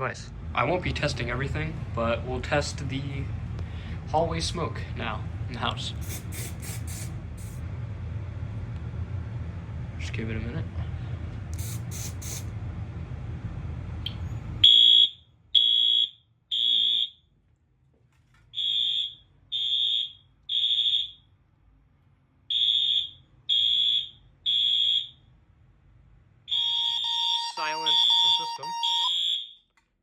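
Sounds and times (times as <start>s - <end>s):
fire alarm beeping: 14.6s - 17.2s, 18.5s - 21.3s, 22.5s - 25.2s, 26.5s - 29.7s.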